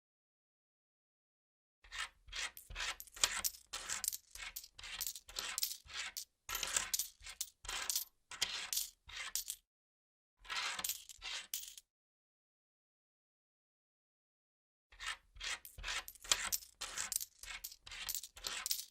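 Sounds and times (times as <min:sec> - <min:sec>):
metal coins clinking: 0:03.1 - 0:05.8, 0:06.5 - 0:08.1, 0:08.7 - 0:09.6, 0:10.8 - 0:11.8, 0:16.2 - 0:18.9.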